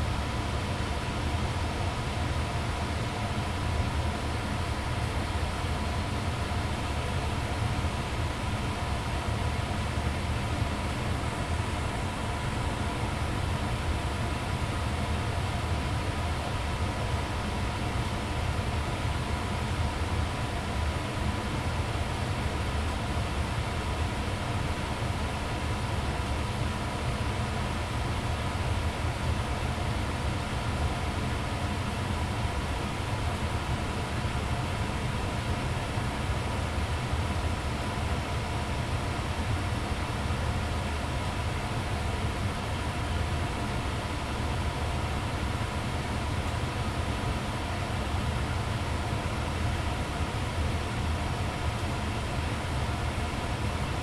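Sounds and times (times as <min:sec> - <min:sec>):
faint steady hum: 0:00.0 - 0:54.0
furnace blower fan running: 0:00.0 - 0:54.0.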